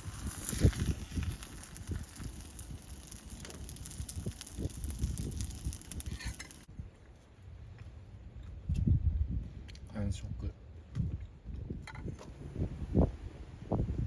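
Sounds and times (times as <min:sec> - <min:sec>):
oil sizzling in a pan: 0:00.0 - 0:06.7.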